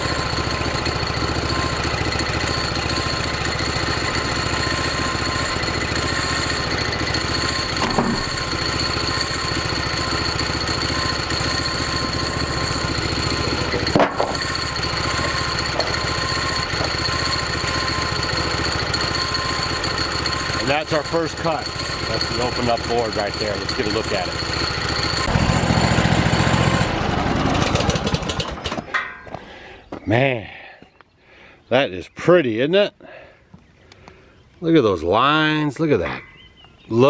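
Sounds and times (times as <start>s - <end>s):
saw blade high whine: 0.0s - 28.1s
band sawmill engine: 0.0s - 29.7s
sharp knocks: 7.7s - 8.4s, 13.9s - 14.6s.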